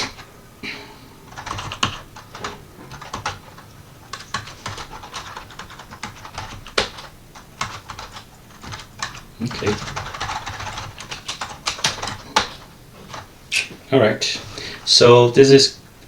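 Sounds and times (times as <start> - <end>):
computer keyboard typing: 0.0 - 0.3, 1.2 - 13.3.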